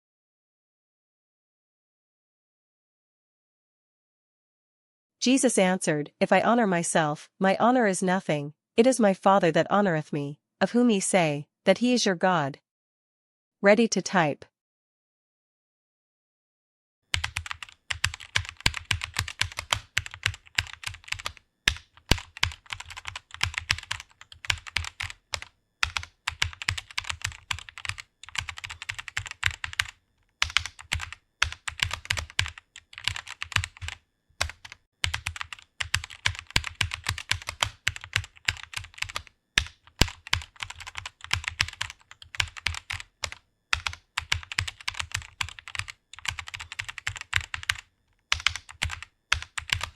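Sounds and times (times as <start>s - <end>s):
rapid keyboard typing: 17.1s - 49.9s.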